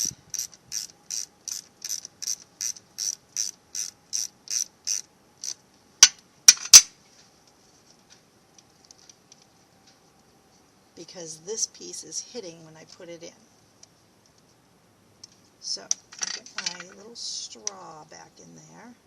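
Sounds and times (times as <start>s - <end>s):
ratchet wrench clicking: 0.0s - 5.6s.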